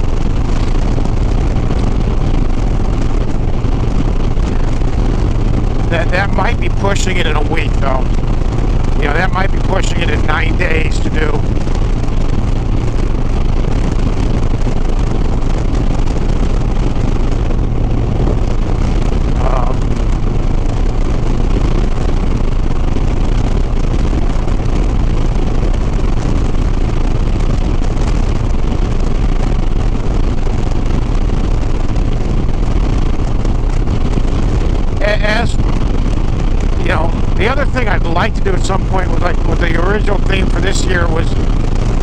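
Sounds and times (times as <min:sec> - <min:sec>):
motorcycle engine cruising: 0:00.0 - 0:42.0
wind noise: 0:00.0 - 0:42.0.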